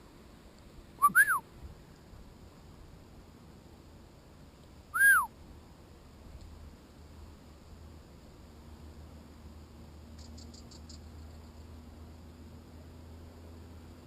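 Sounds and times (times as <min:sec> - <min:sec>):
bird whistled call: 0:01.0 - 0:01.4, 0:05.0 - 0:05.3.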